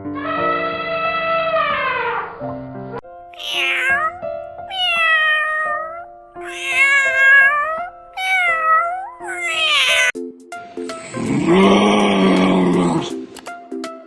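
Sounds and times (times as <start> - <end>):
background music: 0.0 - 14.0
cat meowing: 3.4 - 10.2.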